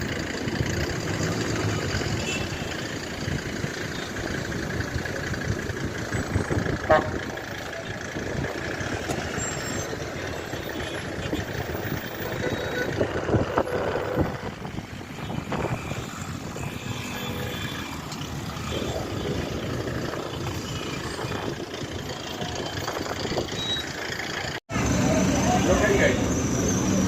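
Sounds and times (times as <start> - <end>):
vehicle engines running: 0.0 - 27.0.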